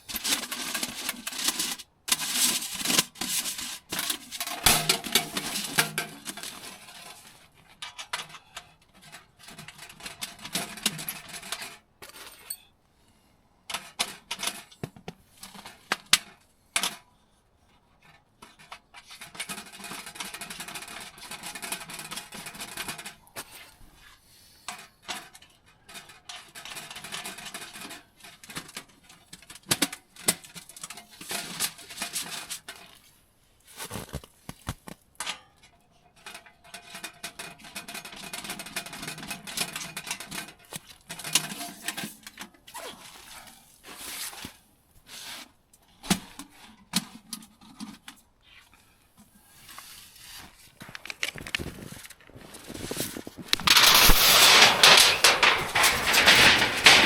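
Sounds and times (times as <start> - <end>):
rustling and scraping: 0.0 - 12.6, 30.3 - 35.2, 39.1 - 57.0.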